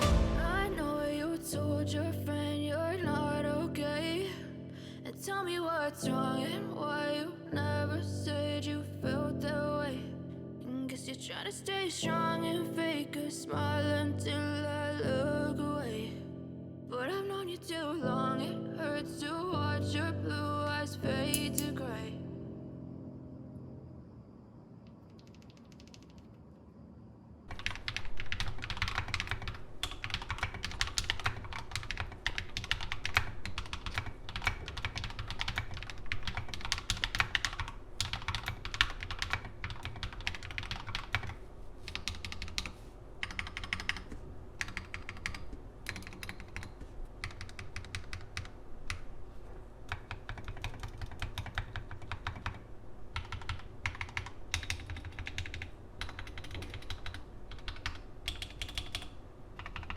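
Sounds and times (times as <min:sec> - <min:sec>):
mechanical keyboard typing: 0:21.3 - 0:21.8, 0:25.1 - 0:26.4, 0:27.5 - 0:49.0, 0:49.9 - 0:52.6, 0:53.2 - 0:59.9.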